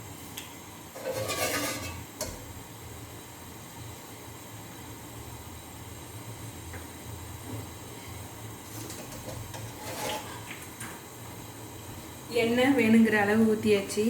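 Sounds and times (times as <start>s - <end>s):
rustling and scraping: 1.0s - 2.0s, 8.7s - 10.5s.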